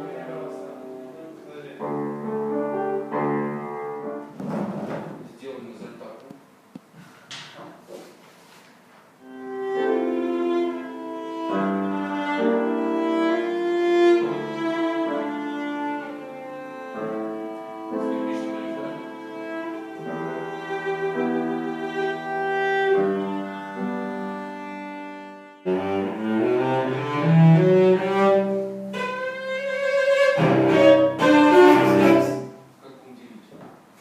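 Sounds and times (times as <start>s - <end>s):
violin and cello playing: 9.2s - 32.7s.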